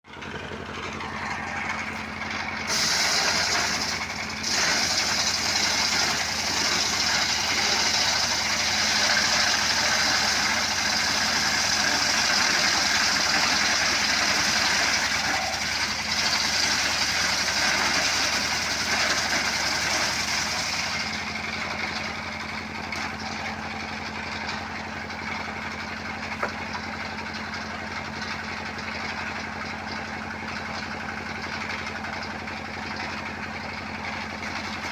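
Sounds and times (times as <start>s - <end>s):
motorcycle engine running: 0.0s - 17.6s, 18.2s - 34.9s
high hissing saw cutting: 2.7s - 21.0s.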